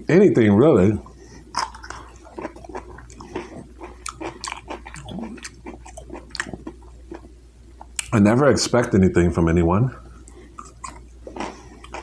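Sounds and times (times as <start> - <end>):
person chewing food: 1.0 - 8.1, 10.0 - 12.0.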